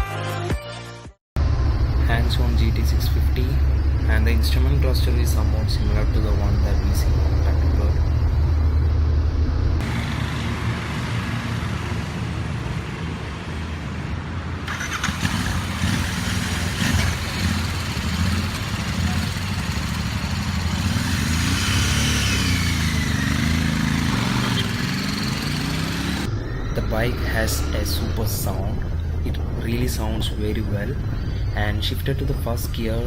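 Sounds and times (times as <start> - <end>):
motorcycle engine revving: 9.8 - 12.6, 14.7 - 26.3.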